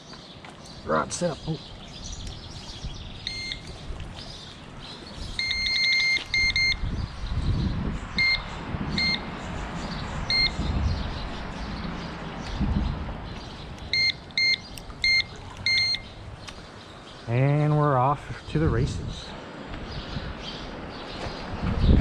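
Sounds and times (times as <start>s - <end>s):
low rumbling noise: 1.6s - 22.0s
bite alarm beeping: 3.2s - 3.7s, 5.4s - 6.9s, 8.2s - 9.3s, 10.3s - 10.6s, 13.9s - 16.2s.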